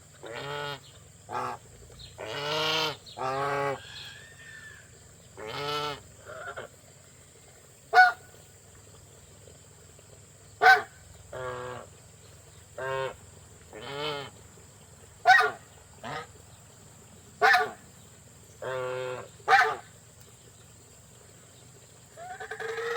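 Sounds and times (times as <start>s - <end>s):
geese honking: 7.9s - 8.2s, 15.2s - 16.3s, 17.4s - 17.8s, 22.2s - 22.9s.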